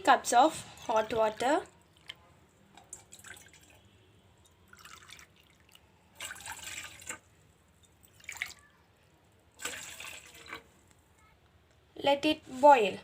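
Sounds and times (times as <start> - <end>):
water pouring into a pot: 0.6 - 10.7.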